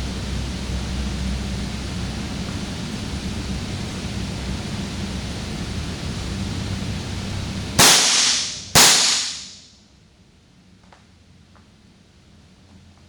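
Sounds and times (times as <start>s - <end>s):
steady hiss: 0.0s - 9.6s
blank gun shots: 7.8s - 9.6s.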